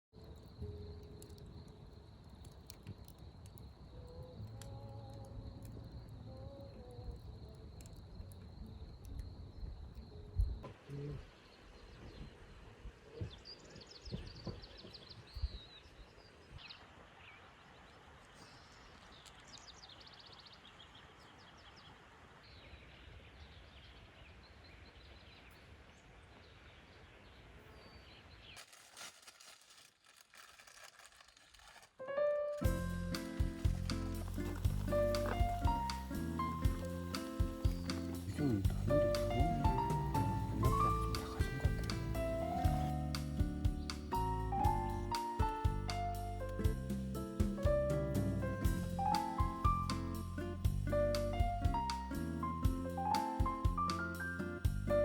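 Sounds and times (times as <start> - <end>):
birds chirping: 32.7 - 47.0.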